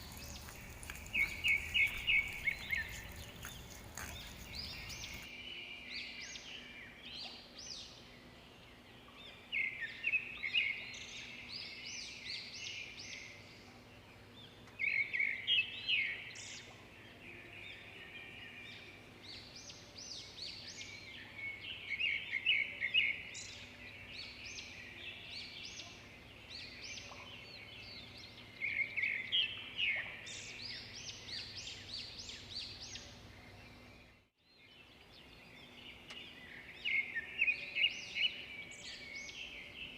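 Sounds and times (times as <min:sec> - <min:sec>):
birds chirping: 0:00.0 - 0:05.5.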